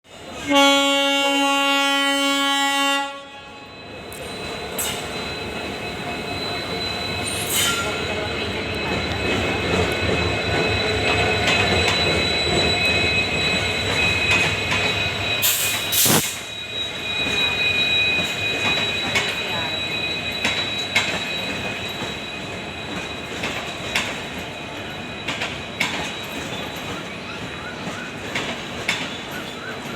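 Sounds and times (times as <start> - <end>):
train rumble: 0.1 - 29.9
locomotive horn blast: 0.4 - 3.7
train wheels squealing: 3.3 - 29.9
high-pitched whine: 3.5 - 23.5
wheels clacking on rail joints: 20.4 - 29.9.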